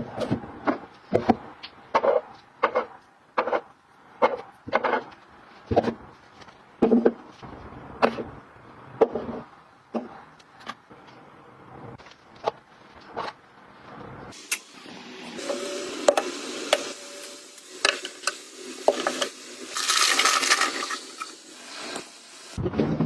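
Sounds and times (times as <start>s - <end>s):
items rubbing and scraping: 18.8s - 22.2s.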